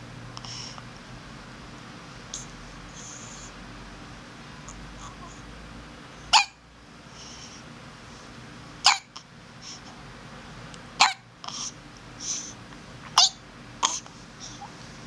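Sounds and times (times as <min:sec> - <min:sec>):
baby hiccuping: 0:06.3 - 0:06.6, 0:08.8 - 0:09.2, 0:11.0 - 0:11.7, 0:13.2 - 0:14.0.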